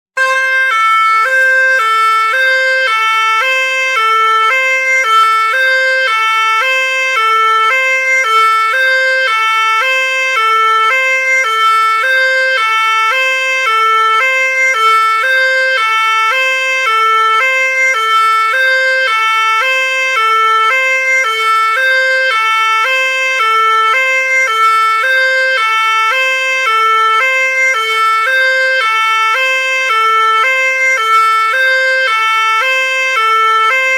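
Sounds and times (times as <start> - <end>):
fire engine two-tone siren: 0.2 - 33.9.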